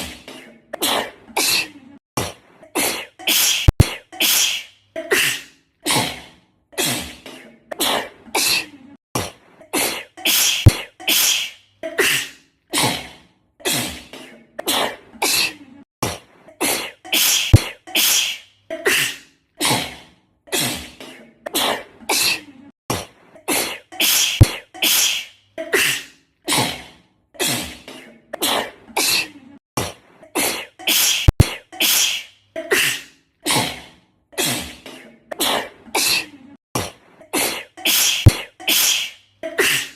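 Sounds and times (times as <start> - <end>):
girl sneezing: 2.8 - 6.1, 9.7 - 13.0, 16.6 - 19.8, 23.5 - 26.7, 30.4 - 33.7, 37.3 - 39.9.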